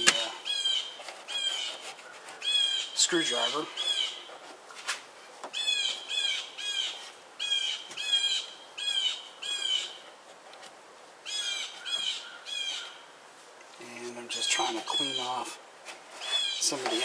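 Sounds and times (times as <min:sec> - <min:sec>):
bird chirping: 0:00.0 - 0:04.4, 0:05.4 - 0:10.1, 0:11.2 - 0:13.1, 0:13.9 - 0:15.6, 0:16.2 - 0:17.0.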